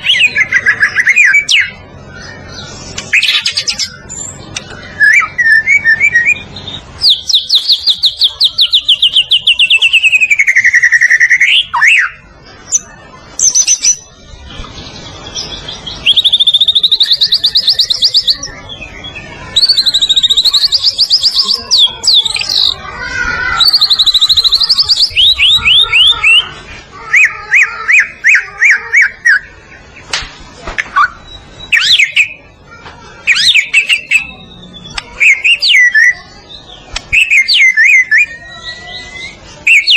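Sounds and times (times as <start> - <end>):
songbird singing trills: 0.0 - 30.1, 30.8 - 39.9.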